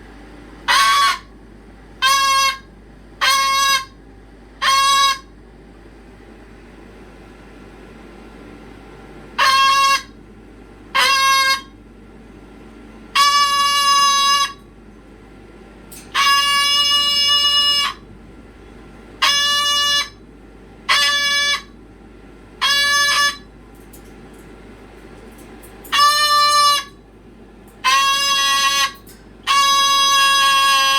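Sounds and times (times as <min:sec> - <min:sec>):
pet animal calling loudly: 0:00.7 - 0:01.3, 0:02.0 - 0:04.0, 0:04.6 - 0:05.3, 0:09.4 - 0:10.1, 0:11.0 - 0:11.7, 0:13.2 - 0:14.6, 0:16.2 - 0:18.0, 0:20.9 - 0:21.8, 0:25.9 - 0:27.0, 0:27.8 - 0:30.9.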